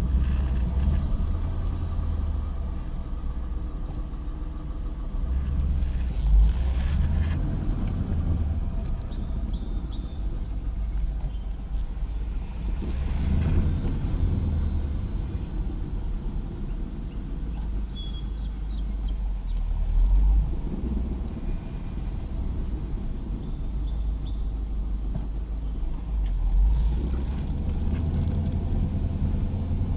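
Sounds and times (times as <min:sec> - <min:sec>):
faint bird chirps: 0:09.0 - 0:11.8, 0:14.1 - 0:19.7.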